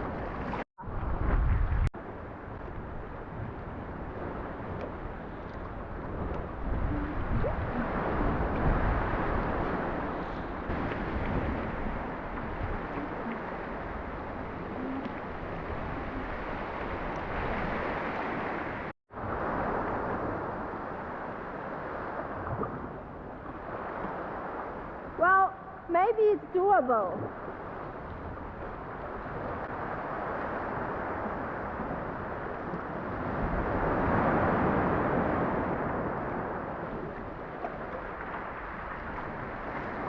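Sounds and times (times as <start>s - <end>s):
wind buffeting microphone: 0.0s - 26.5s
sea water sloshing and waves: 0.0s - 40.0s.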